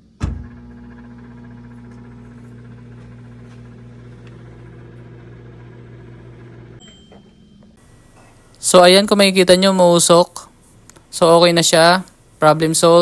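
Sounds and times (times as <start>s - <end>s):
microwave oven humming: 0.0s - 8.7s.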